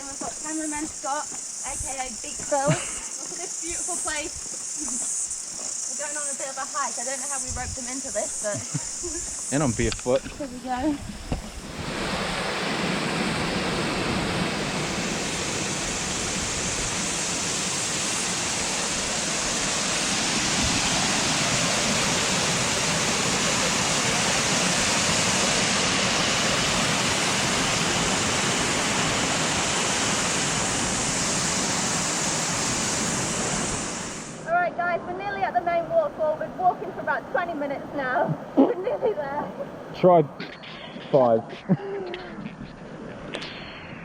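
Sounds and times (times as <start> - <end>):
rushing flowing water: 6.0 - 40.4.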